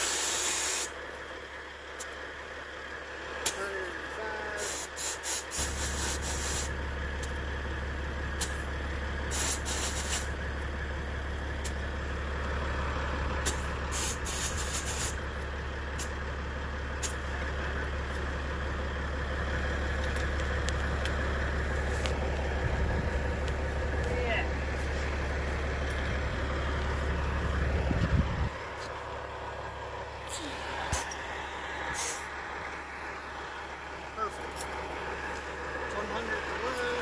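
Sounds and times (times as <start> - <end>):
compressed air hissing: 0.0 - 1.0, 4.6 - 6.8, 9.3 - 10.4, 13.4 - 15.2, 31.9 - 32.4
steady low hum: 0.0 - 37.0.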